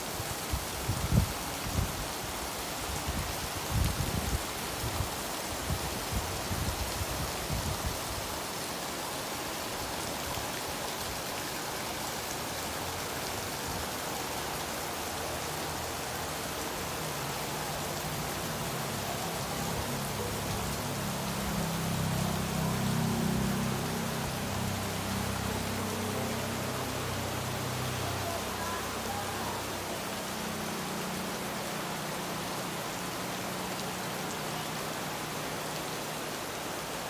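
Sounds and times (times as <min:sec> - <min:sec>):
heavy rain pouring: 0:00.0 - 0:37.0.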